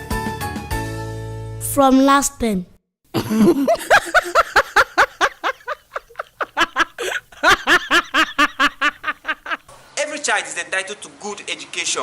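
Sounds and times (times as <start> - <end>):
person laughing hard: 3.2 - 9.6.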